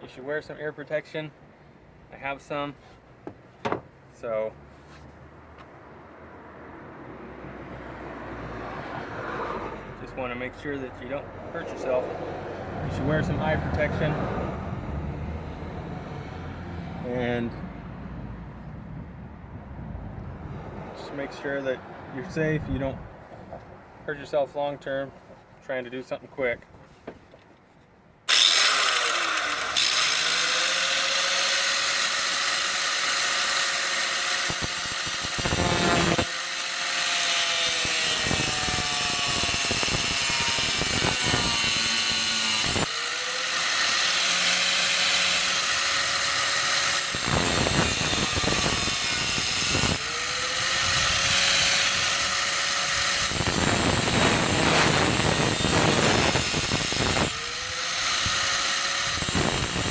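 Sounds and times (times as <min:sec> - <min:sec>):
angle grinder cutting metal: 0:28.3 - 0:59.9.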